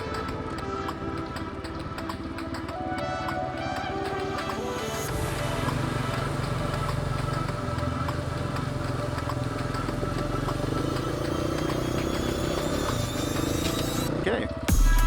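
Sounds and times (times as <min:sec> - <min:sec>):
dirt bike engine running: 0:05.1 - 0:15.0.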